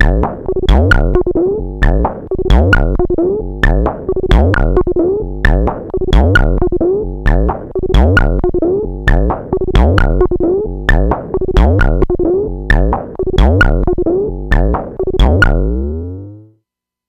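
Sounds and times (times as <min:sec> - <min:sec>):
low synth thumps: 0:00.0 - 0:16.5
clicky synth hits with pitch sweeps: 0:03.6 - 0:16.5.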